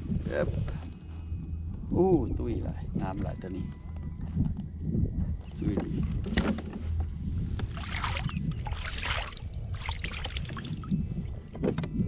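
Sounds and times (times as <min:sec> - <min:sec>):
wind rumble on microphone: 0:00.0 - 0:12.0
water splashing against kayak: 0:07.7 - 0:10.8.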